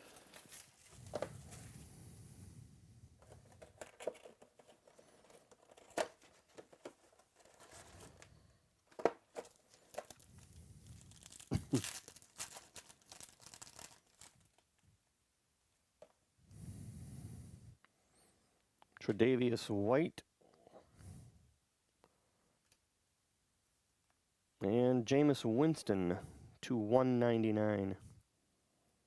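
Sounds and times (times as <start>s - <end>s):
plastic wrap rustling: 0.0s - 2.0s, 3.2s - 14.8s
packaging being torn open: 9.3s - 14.7s.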